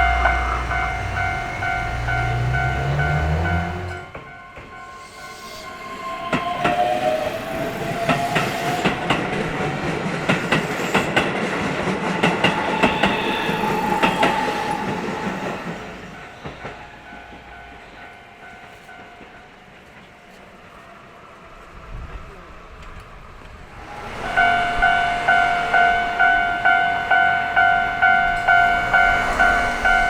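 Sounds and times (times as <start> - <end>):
train wheels clacking: 0.0 - 20.8, 22.8 - 30.0
train whine: 0.0 - 30.0.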